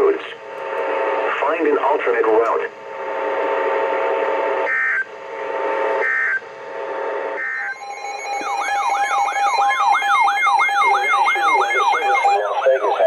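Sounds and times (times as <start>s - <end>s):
radio hiss: 0.0s - 4.0s
data tone bursts: 7.4s - 13.0s
siren-like alert tone: 7.4s - 13.0s.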